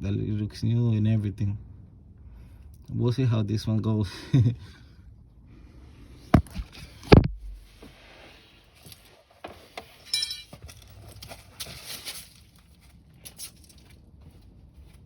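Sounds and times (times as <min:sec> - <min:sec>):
rustling and light clicks: 0:08.8 - 0:15.0
metallic clink: 0:10.0 - 0:10.6.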